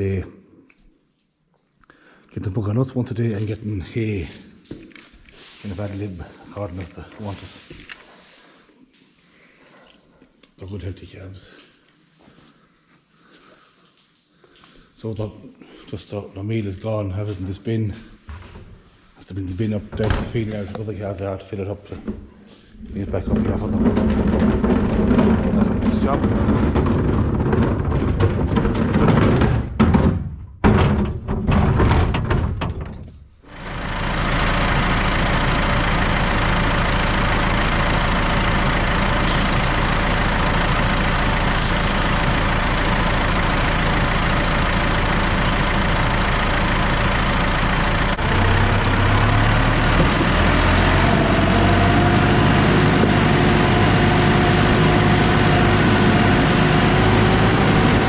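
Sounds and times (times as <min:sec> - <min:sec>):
tractor engine running: 0:22.8 - 0:29.2, 0:33.4 - 0:58.0.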